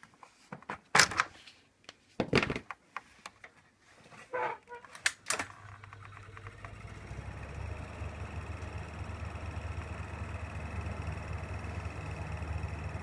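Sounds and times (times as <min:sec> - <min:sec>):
ventilation fan motor hum: 0:05.8 - 0:13.0
ventilation fan ticking: 0:06.4 - 0:13.0.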